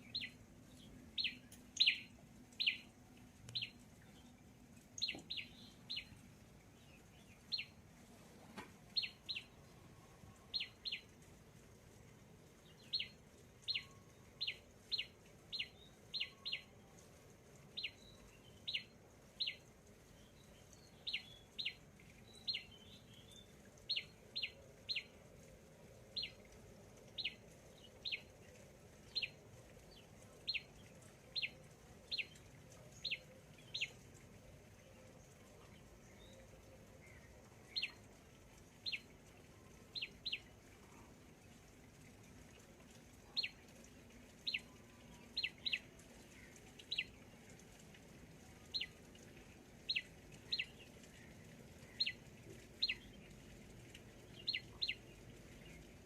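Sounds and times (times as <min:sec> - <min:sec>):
bird chirping: 0:00.0 - 0:02.9, 0:03.5 - 0:04.4, 0:05.0 - 0:07.8, 0:08.9 - 0:11.1, 0:12.6 - 0:16.8, 0:17.8 - 0:19.6, 0:20.2 - 0:25.1, 0:27.1 - 0:28.4, 0:29.0 - 0:34.0, 0:34.9 - 0:38.1, 0:38.8 - 0:39.1, 0:39.9 - 0:40.5, 0:43.4 - 0:43.6, 0:44.4 - 0:47.3, 0:49.9 - 0:52.2, 0:52.8 - 0:53.4, 0:54.2 - 0:55.8.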